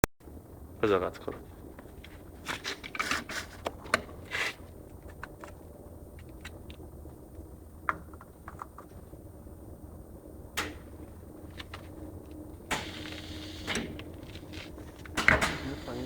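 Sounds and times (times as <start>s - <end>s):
low steady hum: 0.2s - 16.0s
plastic parts clicking and scraping: 1.8s - 6.8s.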